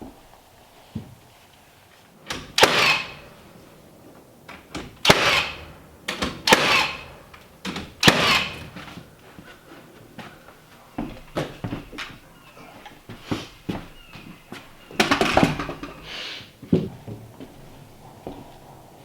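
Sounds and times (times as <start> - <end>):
hammer striking timber: 2.4 - 3.2, 5.0 - 8.8.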